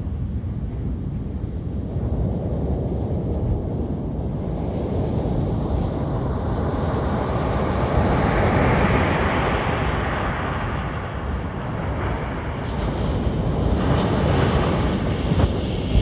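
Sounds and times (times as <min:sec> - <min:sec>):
waves breaking: 0:05.6 - 0:16.0.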